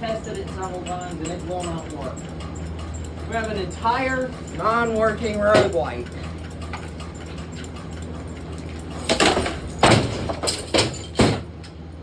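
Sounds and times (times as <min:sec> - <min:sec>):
steady low hum: 0:00.0 - 0:12.0
sharp knocks and clunks: 0:09.1 - 0:11.5.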